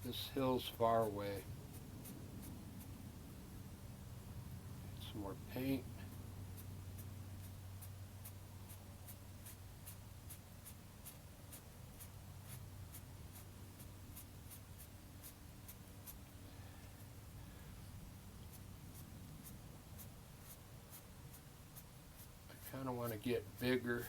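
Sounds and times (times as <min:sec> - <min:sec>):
faint low hum: 0:00.0 - 0:24.0.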